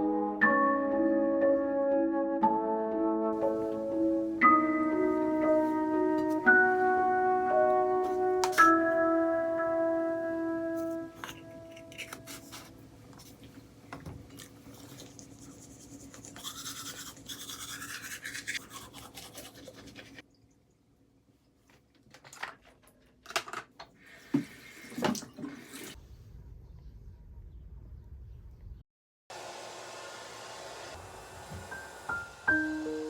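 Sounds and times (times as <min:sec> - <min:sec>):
brush scrubbing: 0:11.2 - 0:13.4, 0:14.6 - 0:20.2.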